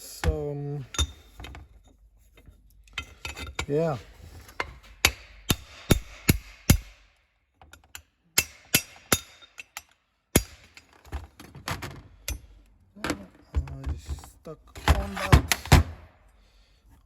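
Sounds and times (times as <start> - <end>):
hammer striking chisel: 5.0 - 7.1, 8.4 - 10.7.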